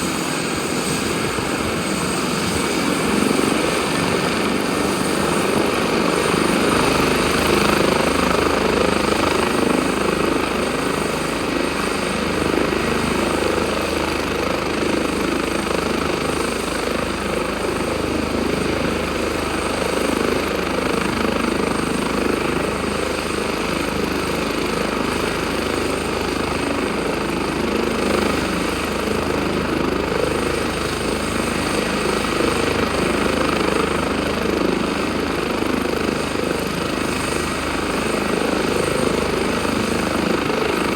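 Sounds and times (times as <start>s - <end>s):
helicopter rotor noise: 0.0s - 40.9s
high turbine engine whine: 0.0s - 40.9s.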